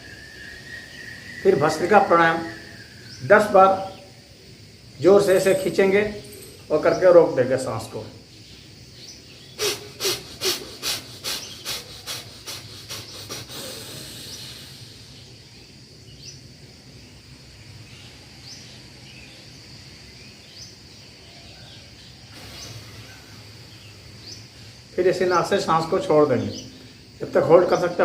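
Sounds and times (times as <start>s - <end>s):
bird chirping: 0.0s - 28.0s
forceful rapid nasal breathing: 9.6s - 15.4s, 22.3s - 24.9s.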